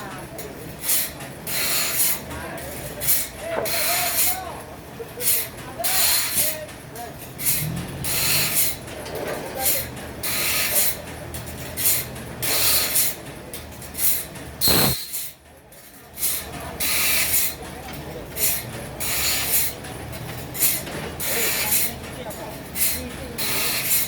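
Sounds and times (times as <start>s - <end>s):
sharp sound: 14.6s - 15.0s
pulsing machine hiss: 14.6s - 15.2s.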